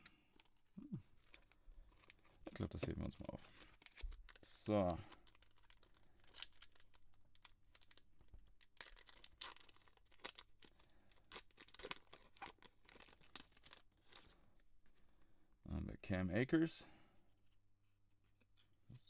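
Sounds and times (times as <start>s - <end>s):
wrapper tearing and crinkling: 0.3s - 14.3s.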